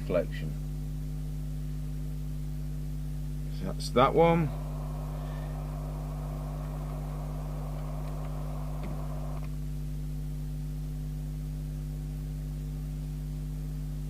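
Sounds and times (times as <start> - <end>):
steady low hum with hiss: 0.0 - 14.0
faint click: 7.7 - 9.6.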